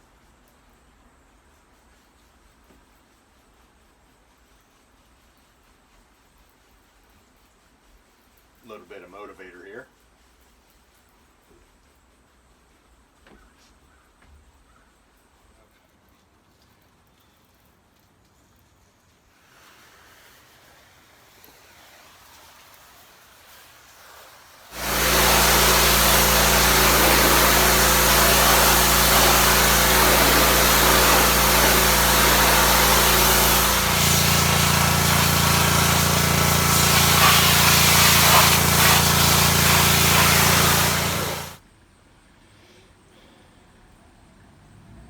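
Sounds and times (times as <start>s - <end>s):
high-pressure spray hiss: 23.4s - 41.6s
pressure washer engine hum: 24.7s - 41.6s.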